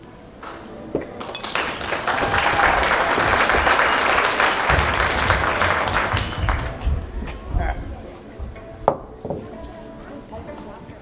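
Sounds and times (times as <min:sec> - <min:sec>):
audience applauding: 0:01.2 - 0:06.9.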